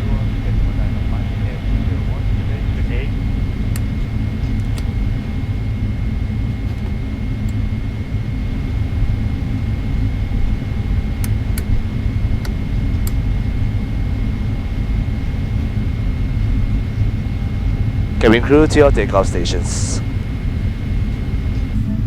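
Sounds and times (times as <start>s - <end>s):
airliner engines rumbling in cabin: 0.0s - 22.0s
light clicks: 3.7s - 5.0s, 12.4s - 13.2s.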